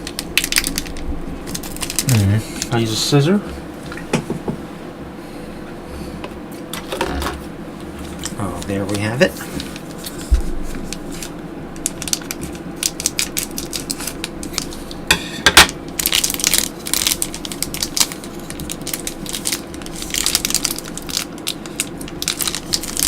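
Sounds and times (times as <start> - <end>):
packaging crinkling: 0.0 - 2.9, 8.0 - 15.0, 15.7 - 23.0.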